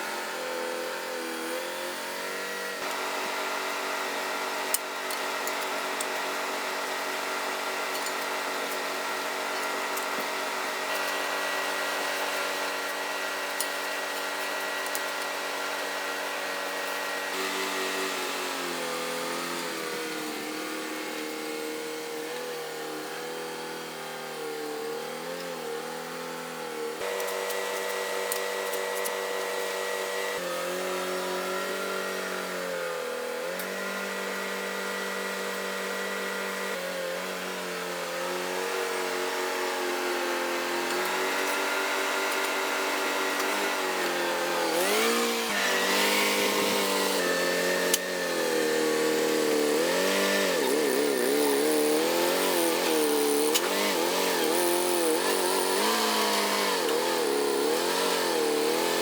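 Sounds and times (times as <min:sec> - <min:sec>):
forklift engine revving: 0:41.0 - 0:59.0.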